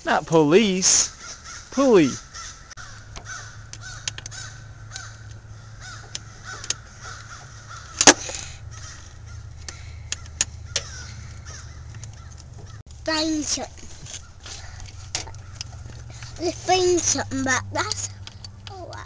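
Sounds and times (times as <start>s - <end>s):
bird calling: 0.6s - 19.0s.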